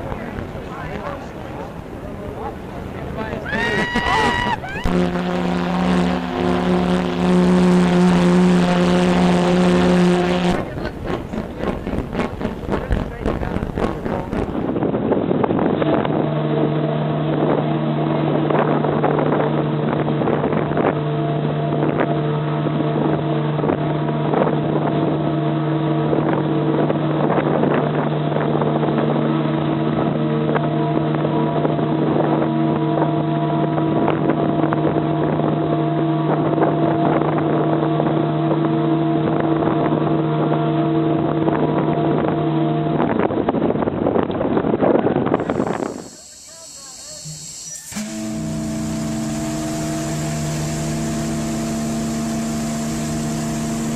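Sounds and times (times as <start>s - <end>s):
rough noisy background: 0.0s - 17.1s, 36.3s - 53.9s
steam whistle blast: 3.5s - 10.6s, 45.4s - 53.9s.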